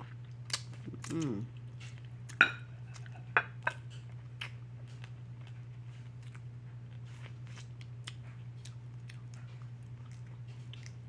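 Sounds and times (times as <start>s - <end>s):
crunching and chewing: 0.0s - 11.0s.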